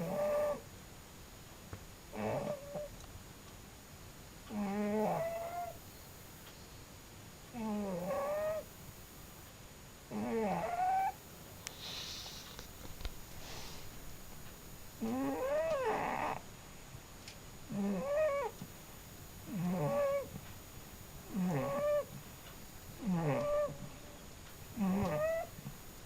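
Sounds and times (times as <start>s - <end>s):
cat snoring: 0.0s - 0.6s, 2.2s - 2.9s, 4.5s - 5.8s, 7.6s - 8.6s, 10.1s - 11.1s, 15.0s - 16.4s, 17.7s - 18.5s, 19.5s - 20.3s, 21.3s - 22.1s, 23.0s - 23.8s, 24.8s - 25.5s.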